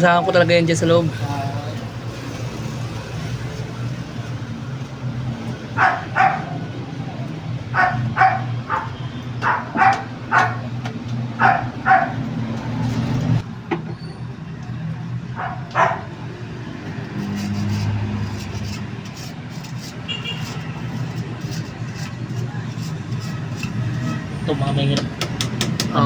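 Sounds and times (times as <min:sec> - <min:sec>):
dog barking: 0:05.8 - 0:06.7, 0:07.7 - 0:10.7, 0:11.4 - 0:12.2, 0:15.3 - 0:16.2.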